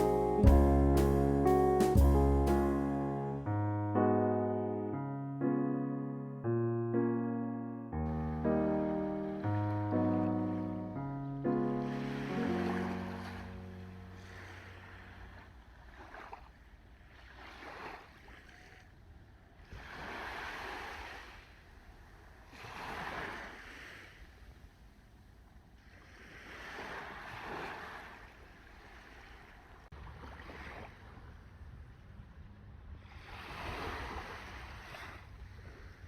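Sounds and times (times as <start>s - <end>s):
sea waves breaking on shore: 8.4s - 18.8s, 19.6s - 24.8s, 25.8s - 31.8s, 32.8s - 36.0s.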